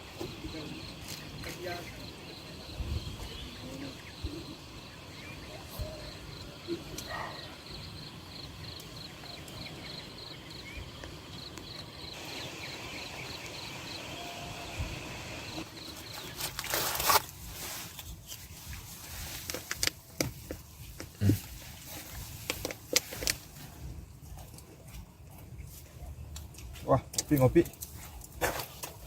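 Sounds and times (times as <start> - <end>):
insect chirping: 0.0 - 17.2
forest background: 0.0 - 29.0.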